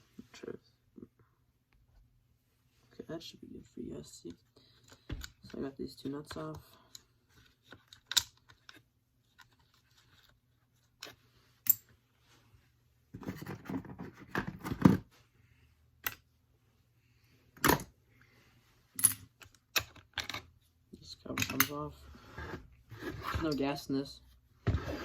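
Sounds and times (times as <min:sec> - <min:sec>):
plastic parts clicking and knocking: 0:04.8 - 0:10.3, 0:19.0 - 0:20.5.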